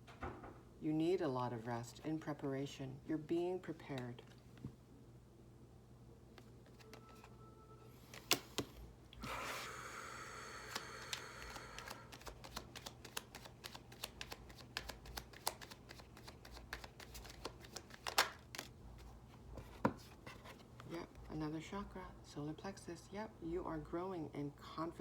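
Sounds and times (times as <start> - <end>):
cards being shuffled: 6.3 - 7.4, 8.0 - 9.6, 10.6 - 21.3
cards riffling: 6.4 - 7.3, 8.0 - 8.9, 10.6 - 21.0
card snaps: 8.0 - 8.8, 10.7 - 18.7.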